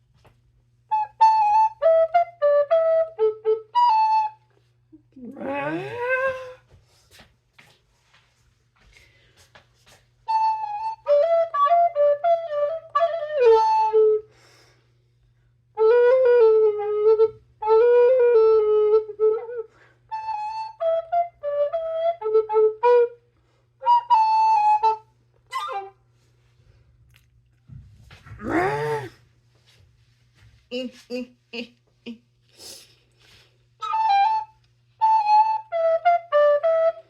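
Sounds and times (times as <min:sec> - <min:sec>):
flute-like wind instrument melody: 0:00.9 - 0:04.7, 0:05.5 - 0:06.6, 0:10.2 - 0:14.4, 0:15.8 - 0:23.2, 0:23.8 - 0:26.0, 0:33.8 - 0:37.0.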